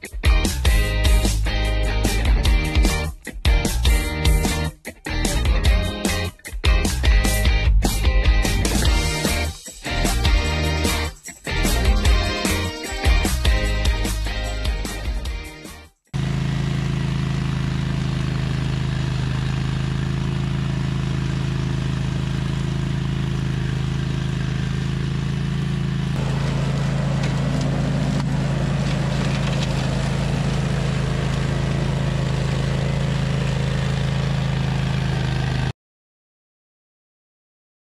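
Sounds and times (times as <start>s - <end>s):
ride-on mower engine running: 8.4s - 12.7s, 16.2s - 35.7s.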